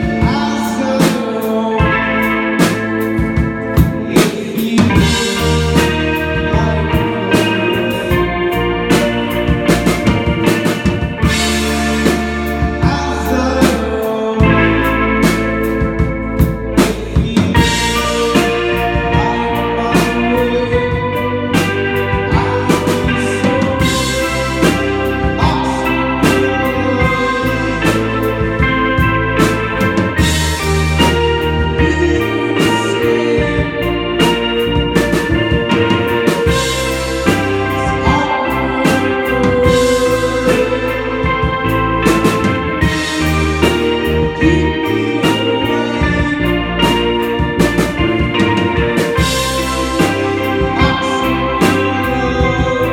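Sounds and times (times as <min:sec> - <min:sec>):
band playing: 0:00.0 - 0:52.9
drum kit beating: 0:00.0 - 0:52.9.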